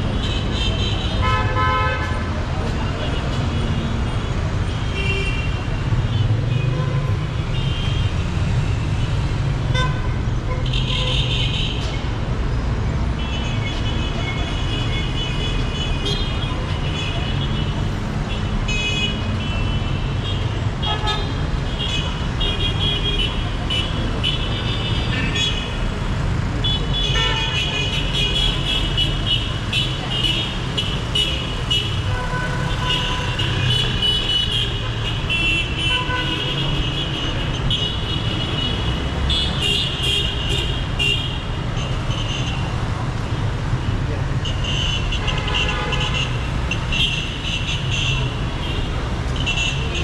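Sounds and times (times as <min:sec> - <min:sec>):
traffic engines rumbling: 0:00.0 - 0:50.0
vehicle horns honking: 0:00.2 - 0:02.3, 0:18.3 - 0:25.8, 0:26.6 - 0:42.7, 0:44.4 - 0:50.0.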